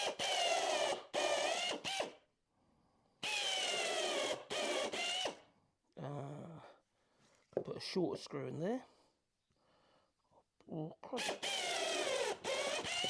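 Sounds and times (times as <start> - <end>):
cordless drill motor whining: 0.0 - 2.2, 3.2 - 5.4, 11.2 - 13.0.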